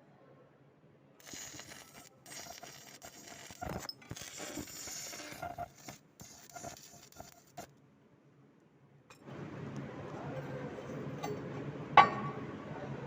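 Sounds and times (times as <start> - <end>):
welding arc crackling: 1.2 - 7.7.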